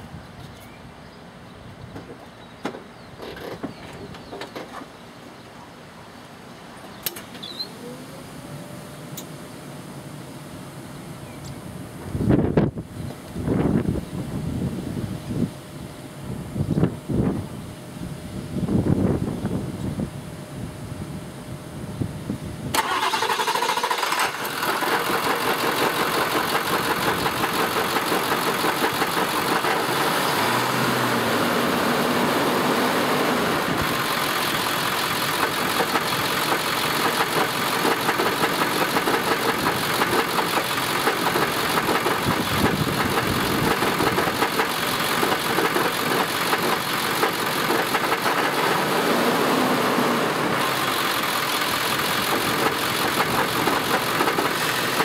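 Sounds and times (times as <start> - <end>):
diesel engine starting: 22.7 - 55.0
engine idling with knocking rattle: 22.8 - 30.4, 33.7 - 48.9, 50.6 - 55.0.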